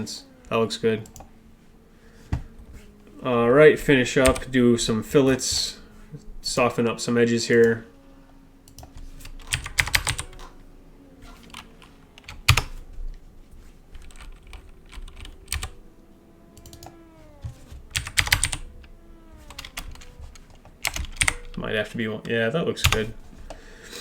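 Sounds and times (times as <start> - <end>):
keyboard keystrokes: 14.0 - 15.8, 17.9 - 18.6, 20.6 - 21.5.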